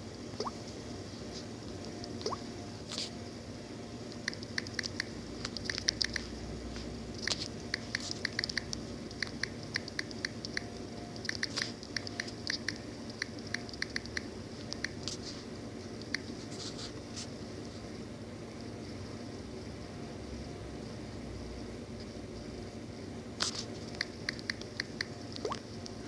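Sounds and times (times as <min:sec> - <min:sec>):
faint low hum: 0:00.0 - 0:26.0.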